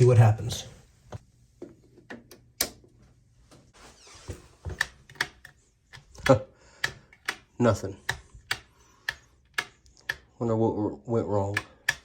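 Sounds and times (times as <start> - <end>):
sharp clicks and knocks: 4.7 - 10.4.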